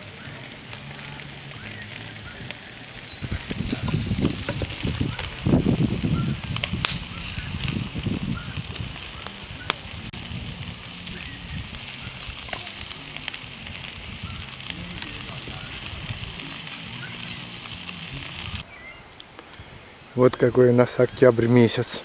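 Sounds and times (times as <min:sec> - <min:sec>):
low rumbling noise: 0:00.0 - 0:18.6
meat sizzling on a grill: 0:00.0 - 0:18.6
wood fire crackling: 0:00.0 - 0:18.6.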